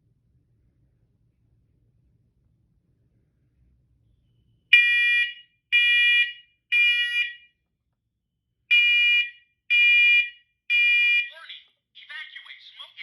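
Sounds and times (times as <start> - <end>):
smoke alarm beeps: 4.3 - 7.5, 8.7 - 11.3.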